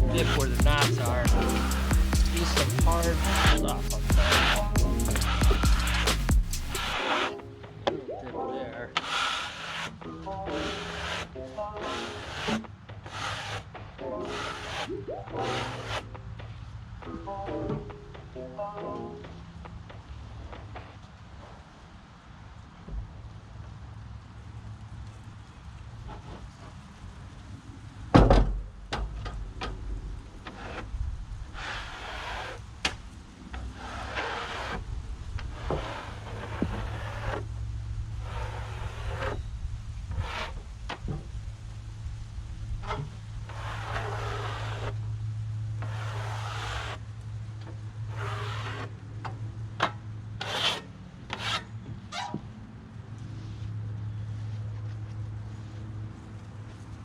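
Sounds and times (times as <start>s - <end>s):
steady low hum: 0.0s - 7.1s, 29.4s - 49.5s
wood rubbing strokes: 0.0s - 7.7s, 9.0s - 17.9s, 30.4s - 37.5s, 38.1s - 41.2s, 42.8s - 49.0s, 50.4s - 51.7s.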